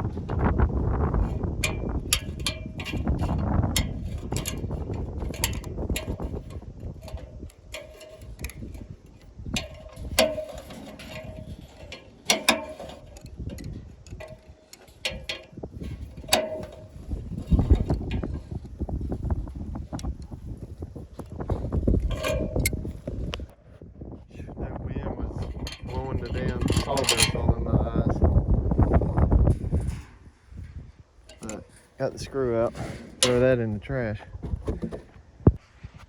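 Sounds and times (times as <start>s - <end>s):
wind rumble on microphone: 0.0s - 36.0s
hand tools clinking on metal: 1.6s - 18.8s, 25.4s - 27.6s, 31.3s - 33.8s.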